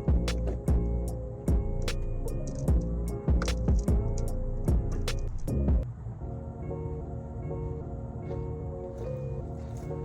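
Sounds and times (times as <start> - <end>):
hip-hop beat: 0.0 - 5.8.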